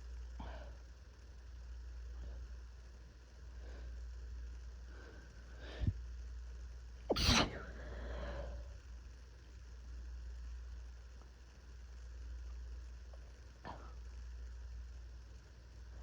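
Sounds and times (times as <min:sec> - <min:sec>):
person sneezing: 0:07.1 - 0:07.8
short breathy sound: 0:07.1 - 0:08.6.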